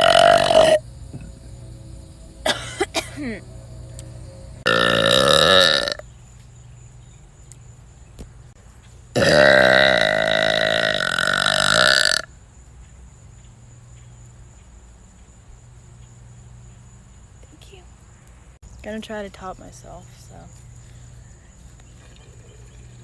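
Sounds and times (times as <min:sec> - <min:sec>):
person burping: 0:00.0 - 0:01.5, 0:02.4 - 0:03.4, 0:04.7 - 0:06.0, 0:09.2 - 0:12.3.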